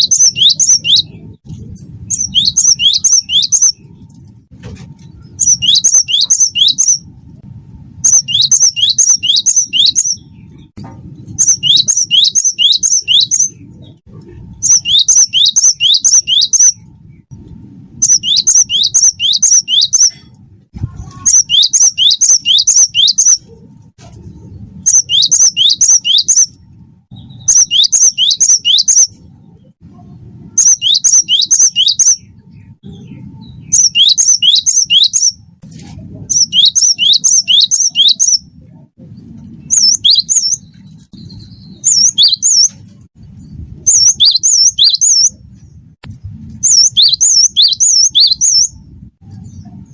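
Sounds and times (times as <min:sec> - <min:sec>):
bird singing high notes: 0:00.0 - 0:01.2, 0:02.1 - 0:03.8, 0:05.4 - 0:07.1, 0:08.1 - 0:10.5, 0:11.4 - 0:13.6, 0:14.6 - 0:16.8, 0:18.0 - 0:20.3, 0:21.0 - 0:23.5, 0:30.6 - 0:32.3, 0:36.3 - 0:38.4.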